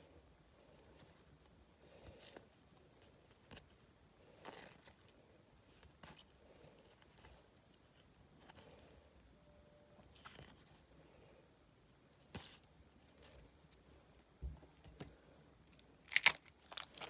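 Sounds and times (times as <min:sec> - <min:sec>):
trading cards rustling: 0:16.0 - 0:17.0.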